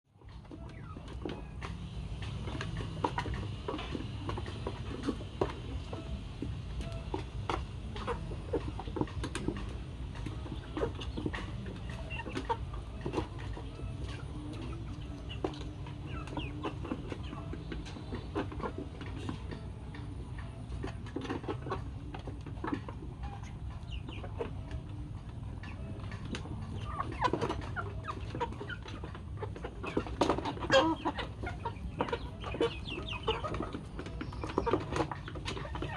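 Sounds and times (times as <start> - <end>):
chickens clucking: 0.2 - 35.9.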